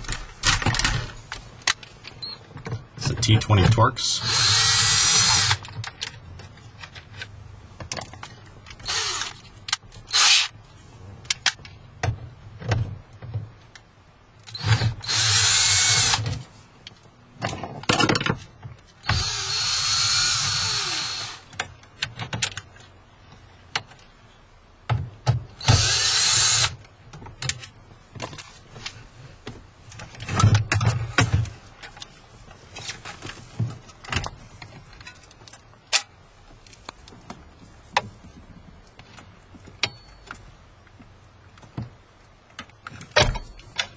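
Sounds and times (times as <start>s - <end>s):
cordless driver spinning screws: 4.2s - 5.6s, 8.8s - 9.4s, 10.1s - 10.5s, 14.5s - 16.2s, 19.1s - 21.5s, 25.6s - 26.8s.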